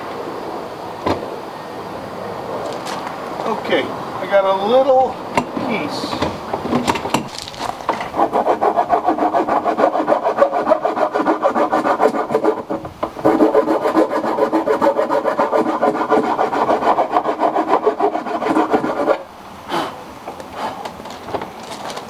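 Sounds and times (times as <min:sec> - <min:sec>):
hand file rasping: 0:08.1 - 0:19.3.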